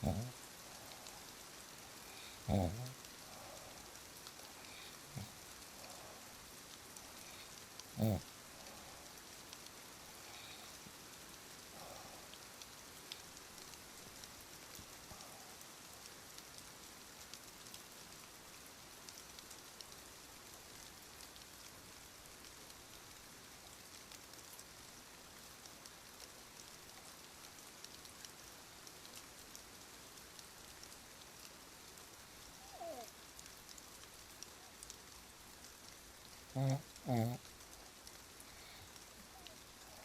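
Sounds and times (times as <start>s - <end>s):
faint hiss: 0.0s - 40.0s
light ticks: 9.0s - 11.0s, 12.3s - 16.6s, 25.4s - 40.0s.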